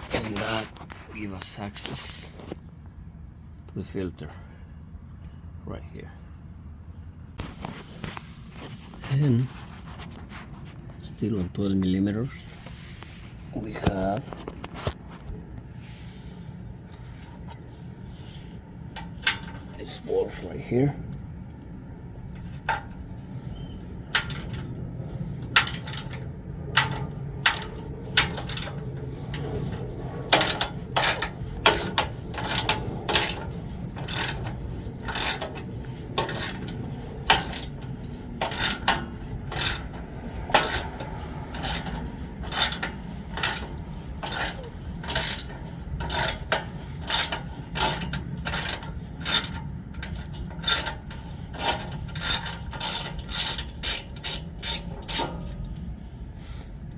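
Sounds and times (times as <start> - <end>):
hand ratchet clicking: 24.1 - 24.7, 25.4 - 26.2, 26.8 - 55.9.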